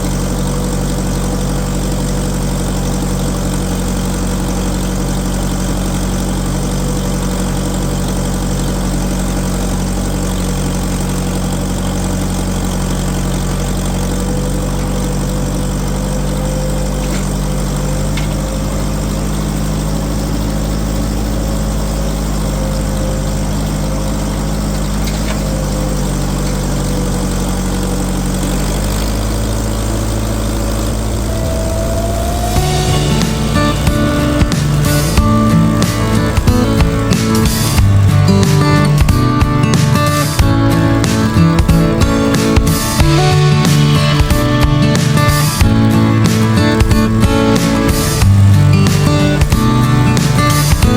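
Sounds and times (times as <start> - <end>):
large engine running steadily: 0.0 - 50.9
faint whine: 29.7 - 50.9.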